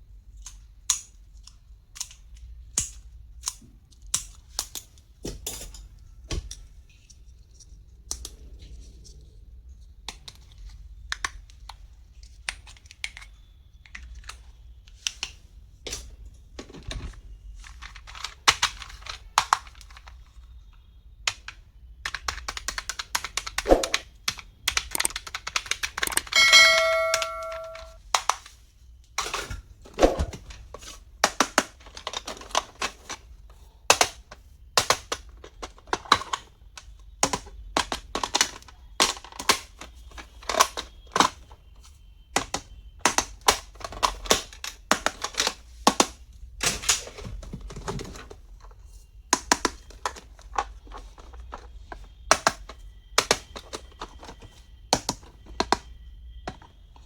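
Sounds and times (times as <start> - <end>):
plastic packaging clicks and rustling: 10.1 - 20.5, 27.8 - 57.0
chime-like tone: 26.3 - 28.0.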